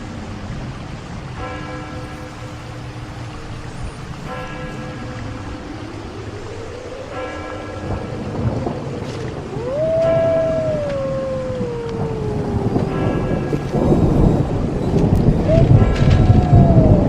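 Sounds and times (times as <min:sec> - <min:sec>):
low rumbling storm-like noise: 0:00.0 - 0:17.0
long eerie wail: 0:04.9 - 0:17.0.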